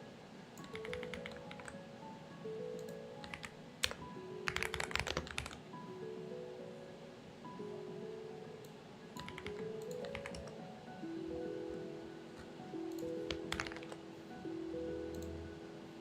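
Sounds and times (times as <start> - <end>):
soft melodic background music: 0.0 - 16.0
mechanical keyboard typing: 0.6 - 1.8, 2.8 - 5.6, 9.2 - 10.6, 12.4 - 14.0.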